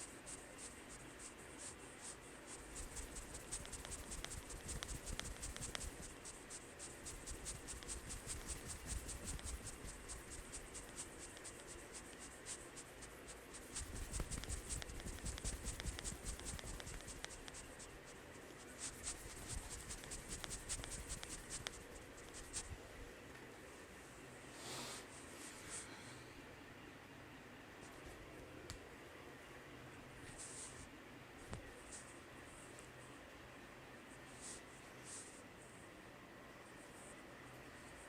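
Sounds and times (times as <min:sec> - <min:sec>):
fingers scratching through hair: 0:00.0 - 0:22.8.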